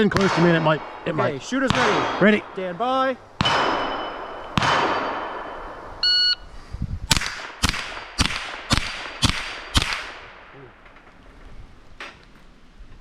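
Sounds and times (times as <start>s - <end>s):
rifle shots: 0.0s - 5.9s, 7.1s - 10.6s
shot timer beep: 6.0s - 6.4s.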